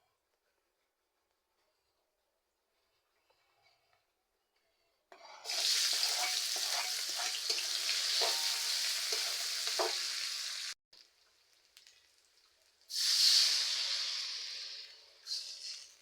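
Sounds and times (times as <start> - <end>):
food sizzling in a pan: 5.4 - 16.0
utensil knocking against pan: 5.9 - 10.1.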